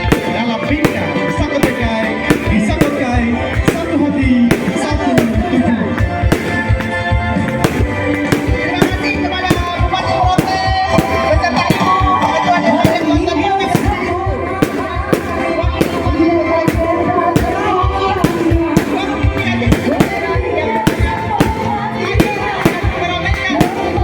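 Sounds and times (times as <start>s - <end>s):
fireworks banging: 0.0s - 24.0s
loud music with singing: 0.0s - 24.0s.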